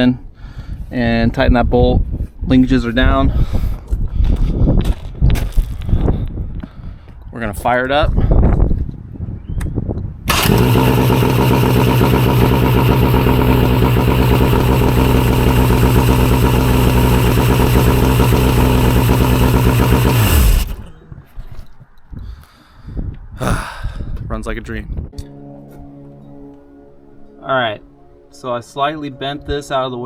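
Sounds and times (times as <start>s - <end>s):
outboard motor idling: 10.3s - 20.9s.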